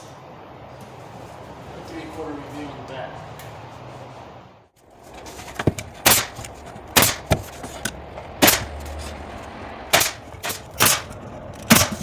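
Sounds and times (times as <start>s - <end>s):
nail gun firing: 6.0s - 7.4s, 8.4s - 8.7s, 9.9s - 12.0s.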